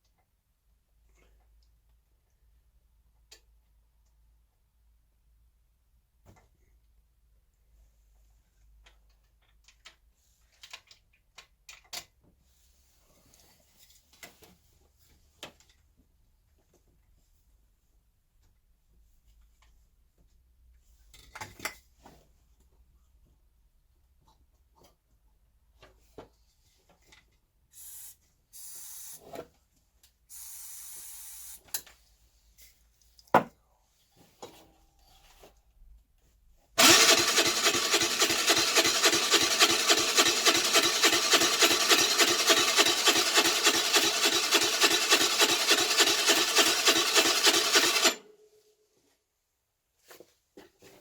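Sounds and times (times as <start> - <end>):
electric starter cranking engine: 36.8 - 48.3.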